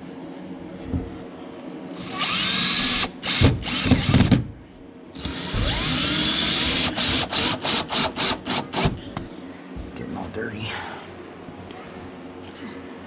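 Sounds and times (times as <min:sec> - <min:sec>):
power drill whining: 0:02.0 - 0:04.3, 0:05.2 - 0:08.9.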